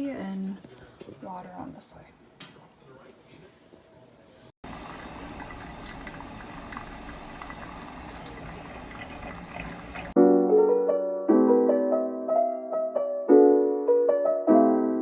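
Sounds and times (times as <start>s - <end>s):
coffee maker brewing: 4.6s - 10.2s
piano music: 10.1s - 15.0s.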